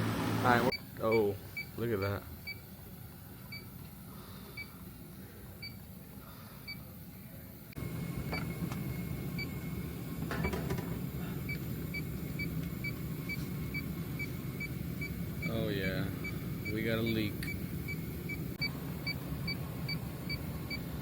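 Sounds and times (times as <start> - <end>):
leak detector beeping: 0.7 - 2.7, 3.5 - 3.8, 7.8 - 20.9.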